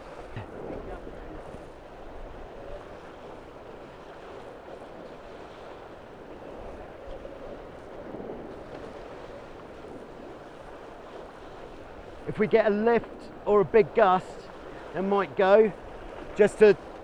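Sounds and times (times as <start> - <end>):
wind on microphone: 0.0 - 12.4
water rushing along hulls: 0.0 - 17.0.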